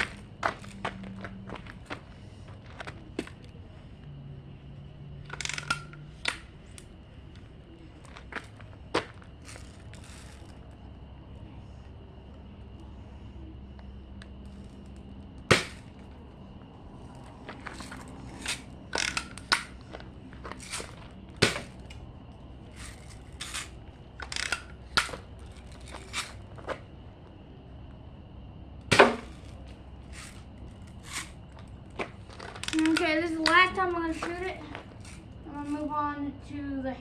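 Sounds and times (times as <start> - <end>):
bb gun firing: 15.5 - 15.9, 21.4 - 21.8, 28.9 - 29.4.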